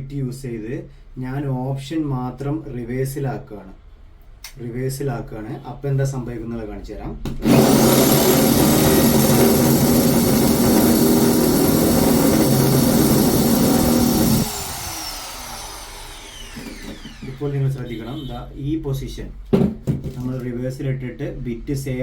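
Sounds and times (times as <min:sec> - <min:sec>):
hammer drill motor whine: 0:07.4 - 0:18.3.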